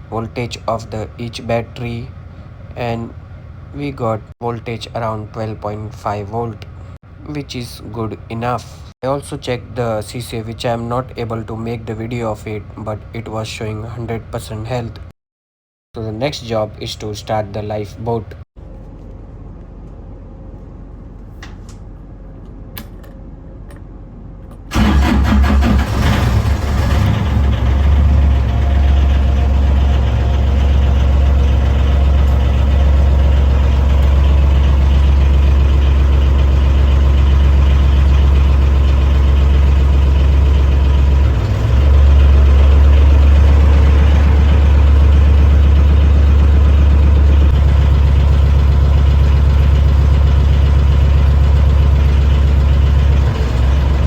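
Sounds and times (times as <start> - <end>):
diesel engine cranking and running: 24.6 - 54.0.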